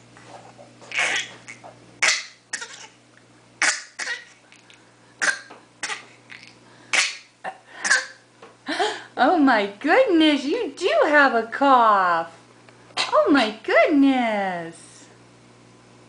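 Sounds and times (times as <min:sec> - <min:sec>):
baby fake coughing: 0:00.9 - 0:03.0, 0:03.6 - 0:04.4, 0:05.2 - 0:08.2.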